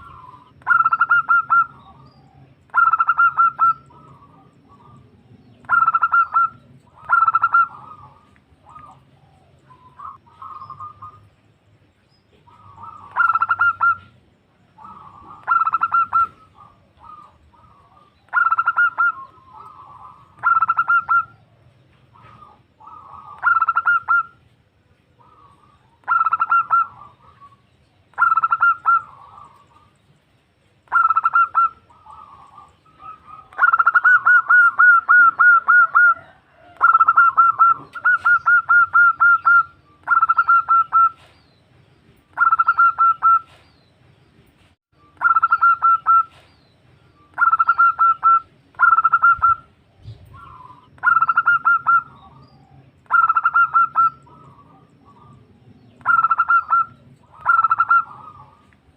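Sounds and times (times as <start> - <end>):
dove cooing: 0.0 - 11.4, 12.3 - 30.0, 30.9 - 41.4, 42.4 - 43.7, 45.2 - 46.5, 47.2 - 58.9.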